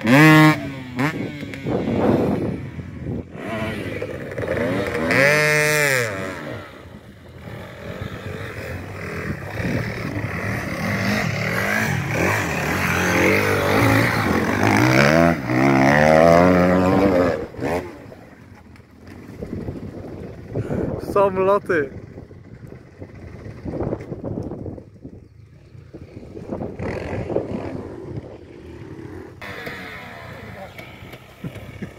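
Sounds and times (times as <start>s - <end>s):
off-road engines revving: 0.0s - 31.9s.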